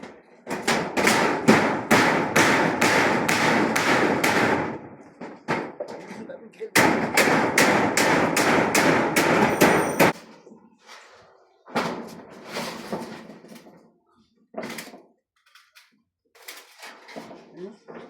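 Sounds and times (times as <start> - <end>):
rapid sharp knocks: 0.6 - 4.8, 6.8 - 10.2.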